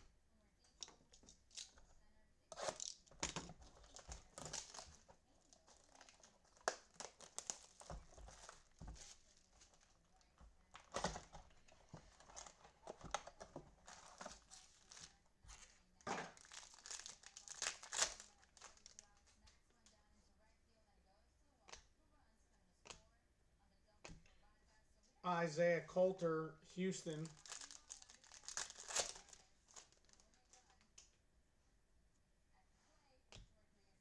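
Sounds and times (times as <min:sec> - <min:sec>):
cards rustling and clicking: 0:02.5 - 0:19.4, 0:27.2 - 0:30.8
wrappers crinkling and tearing: 0:02.5 - 0:19.5, 0:27.2 - 0:30.8.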